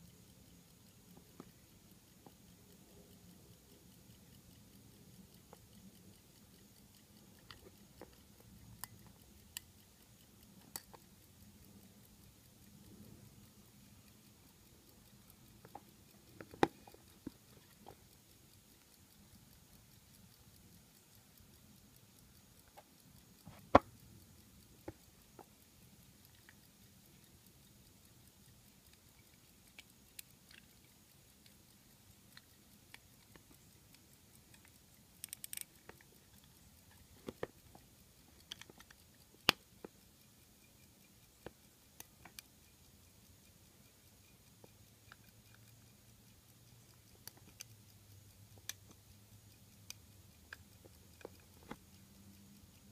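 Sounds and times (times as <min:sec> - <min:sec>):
pocket watch clicks and knocks: 0:00.0 - 0:52.9.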